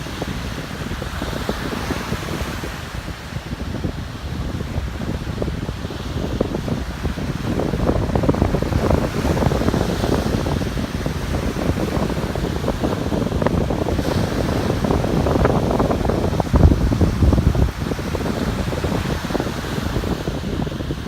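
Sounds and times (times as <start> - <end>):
ocean surf: 0.0 - 21.0
wind buffeting microphone: 0.0 - 21.0.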